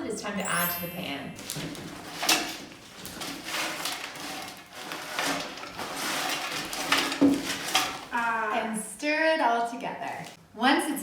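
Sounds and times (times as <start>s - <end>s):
rustling of dry snack mix: 1.4s - 8.4s
kitchen pot and utensil clatter: 1.4s - 8.7s.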